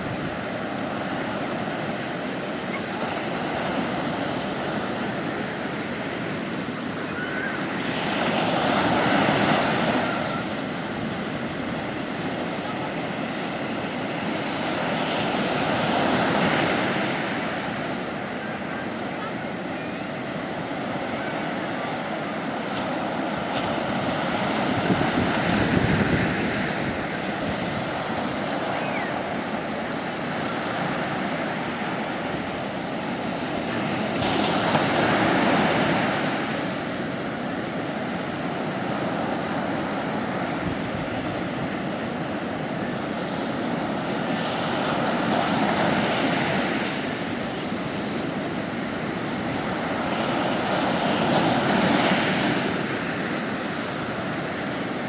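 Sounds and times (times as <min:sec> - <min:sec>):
sea waves breaking on shore: 0:00.0 - 0:55.0.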